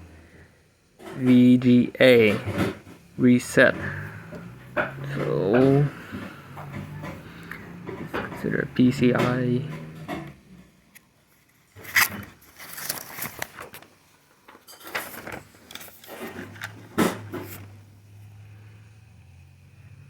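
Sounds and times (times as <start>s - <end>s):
low steady hum: 0.0s - 20.0s
handling knocks clicks and rustles: 1.0s - 10.8s, 11.8s - 17.8s.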